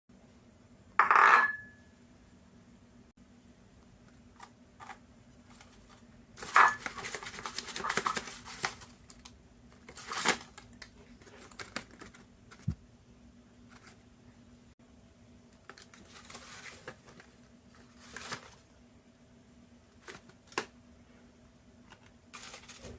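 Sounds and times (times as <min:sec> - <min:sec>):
paper rustling and crinkling: 0:04.4 - 0:12.8, 0:13.7 - 0:14.0, 0:15.6 - 0:18.7, 0:21.9 - 0:22.9.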